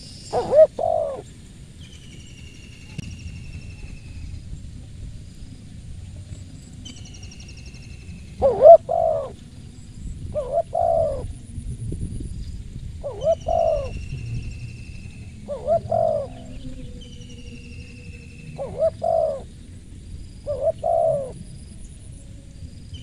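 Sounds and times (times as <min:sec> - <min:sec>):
dove cooing: 0:00.0 - 0:01.3, 0:08.3 - 0:09.4, 0:10.2 - 0:11.4, 0:13.0 - 0:14.4, 0:15.2 - 0:21.8
high falling whistled bird calls: 0:13.1 - 0:19.5.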